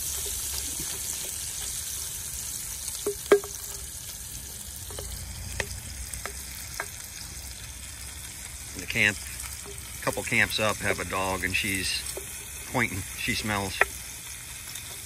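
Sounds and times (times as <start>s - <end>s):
meat sizzling in a pot: 0.0s - 15.0s
utensil clicking against pot: 3.0s - 3.9s, 4.9s - 7.0s, 11.8s - 14.1s.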